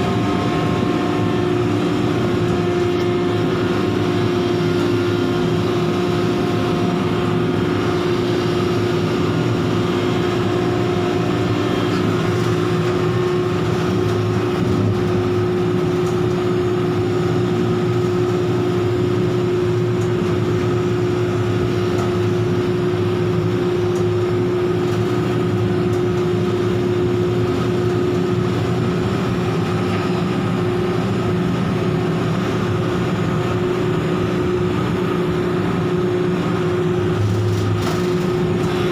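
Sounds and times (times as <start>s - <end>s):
heavy machinery droning: 0.0s - 38.9s.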